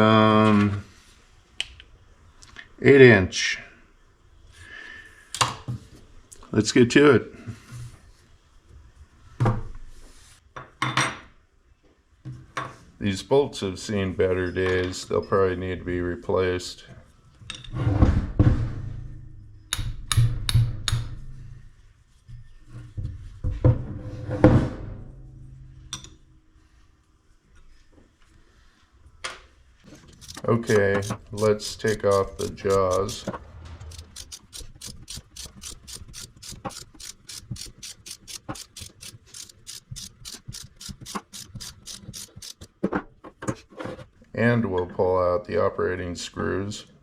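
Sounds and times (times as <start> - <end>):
lathe chuck ratchet clicking: 30.2 - 33.3, 33.9 - 42.7.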